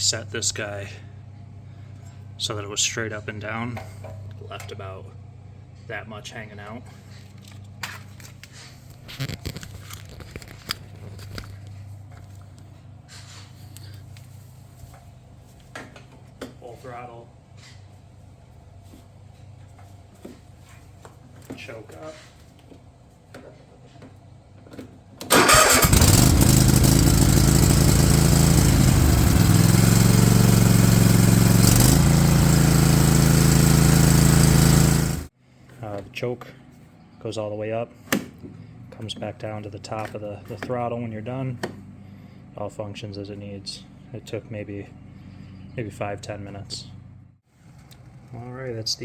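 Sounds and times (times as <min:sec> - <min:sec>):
riding mower engine running: 0:25.2 - 0:35.3
engine cranking: 0:25.3 - 0:35.3.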